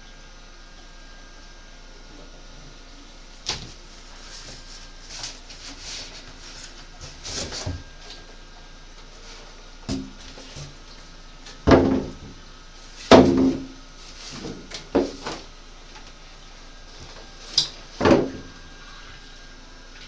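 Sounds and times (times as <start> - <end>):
hollow knocks and bumps: 9.9 - 10.8, 11.5 - 12.4, 13.1 - 15.5.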